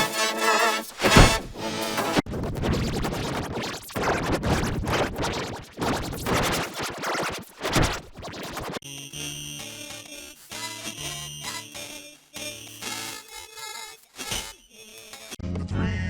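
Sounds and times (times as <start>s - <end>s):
steady tonal music: 0.0s - 2.2s.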